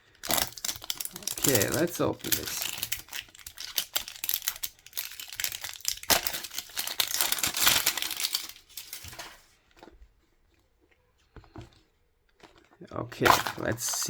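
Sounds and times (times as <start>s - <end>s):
plastic packaging crinkling: 0.0s - 9.6s.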